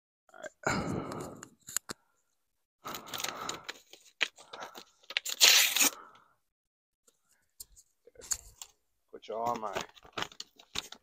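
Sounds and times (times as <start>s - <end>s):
packaging ripping and crinkling: 2.9s - 6.0s, 9.5s - 11.0s.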